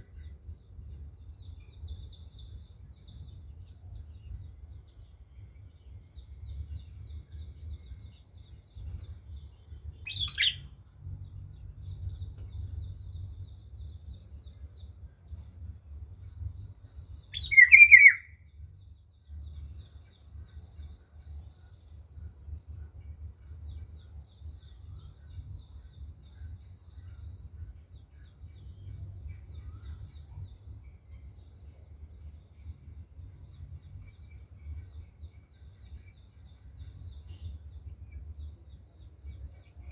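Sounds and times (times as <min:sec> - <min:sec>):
bird calls: 0:09.9 - 0:10.7, 0:17.3 - 0:18.4.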